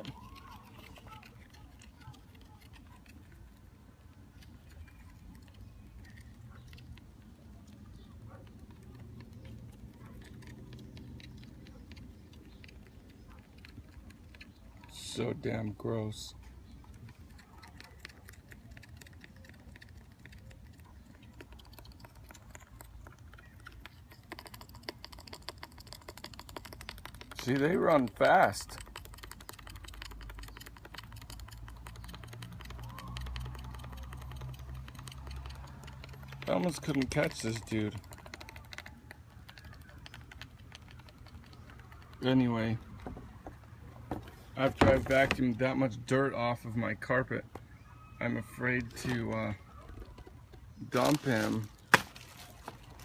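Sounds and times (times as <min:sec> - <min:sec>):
insect legs clicking on plastic: 0:16.9 - 0:45.5
insect legs scratching on plastic: 0:50.9 - 0:53.0.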